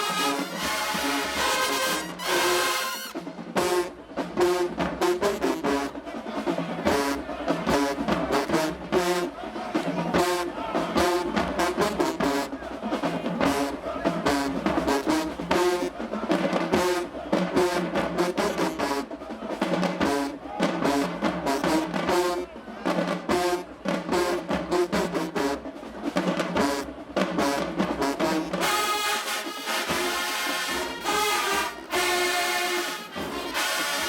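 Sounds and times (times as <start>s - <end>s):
brass section: 0.0s - 34.0s
drumline beat: 0.0s - 34.0s.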